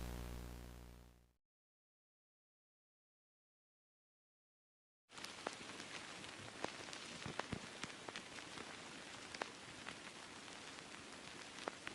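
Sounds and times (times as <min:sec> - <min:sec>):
crackles and pops: 0:00.0 - 0:01.3, 0:05.1 - 0:11.9
faint steady hiss: 0:00.0 - 0:01.3, 0:05.1 - 0:11.9.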